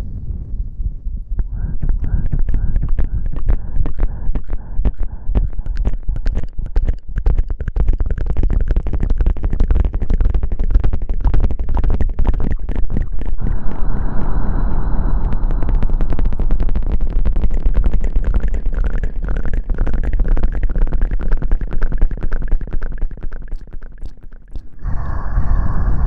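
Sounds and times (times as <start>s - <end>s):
deep rumble: 0.0s - 7.2s, 13.0s - 21.5s, 24.4s - 26.0s
fingers scratching on microphone: 1.4s - 13.5s, 16.4s - 25.6s.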